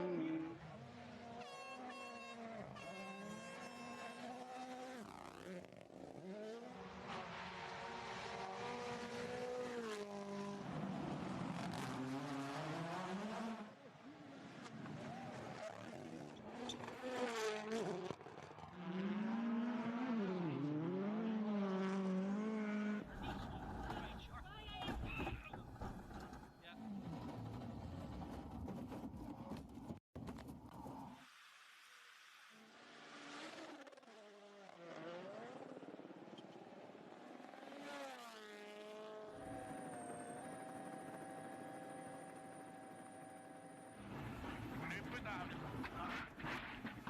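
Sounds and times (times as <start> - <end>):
rally car engine high revs: 0.0 - 13.7, 14.6 - 24.2.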